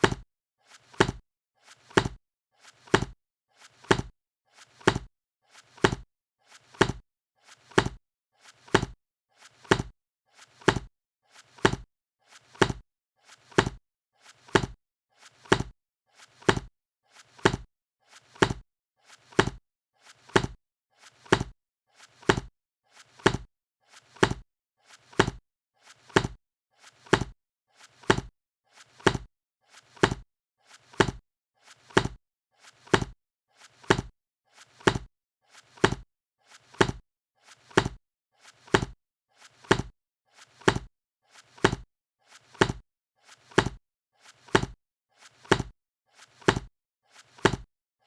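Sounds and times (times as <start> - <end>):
book being shut: 47.4 - 47.6.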